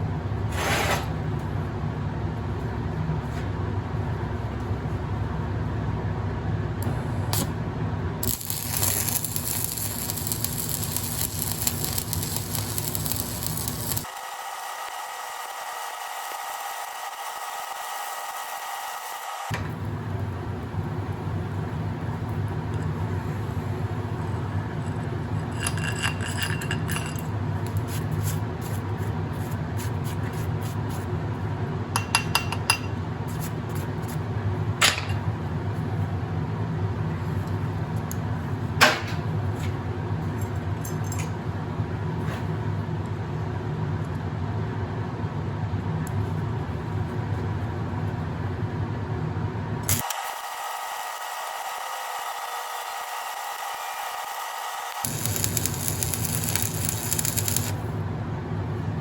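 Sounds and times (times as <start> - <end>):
welding arc humming and crackling: 6.8 - 31.5, 49.8 - 58.1.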